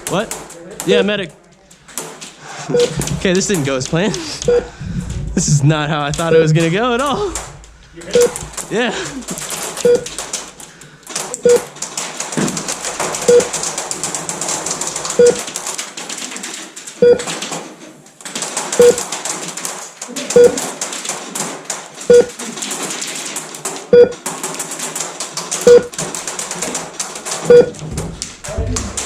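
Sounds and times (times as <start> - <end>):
pellets striking the room: 0.0 - 29.0
airsoft fire clatter: 1.8 - 29.0.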